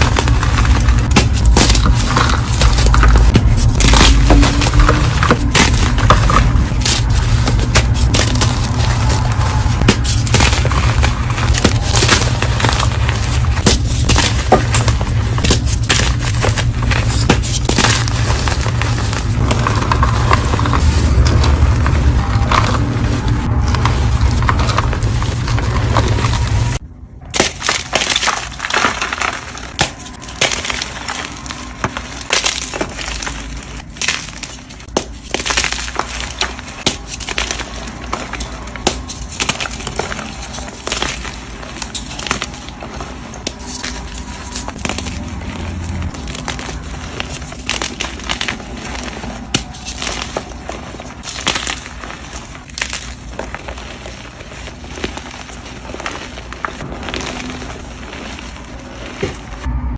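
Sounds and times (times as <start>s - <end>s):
chalk blocks crunching: 0.0s - 59.7s.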